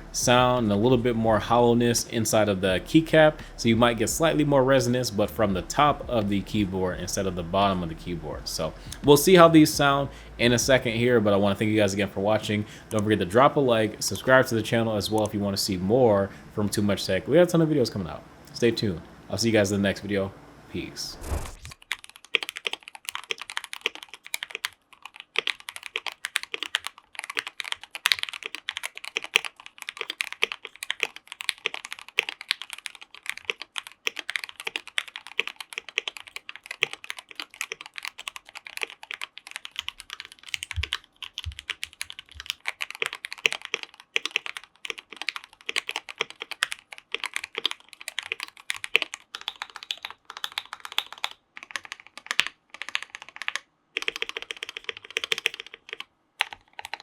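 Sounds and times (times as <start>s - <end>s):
mechanical keyboard typing: 21.2s - 57.0s.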